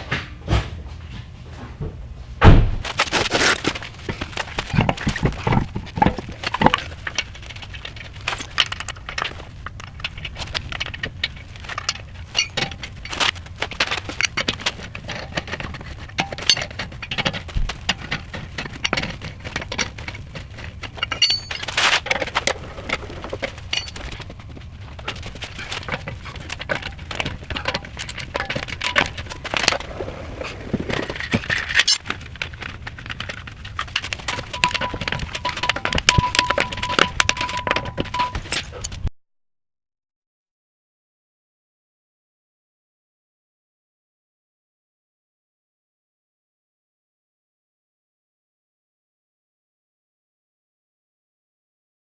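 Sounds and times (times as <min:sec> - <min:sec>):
metallic clinking and rattling: 0:02.8 - 0:39.0.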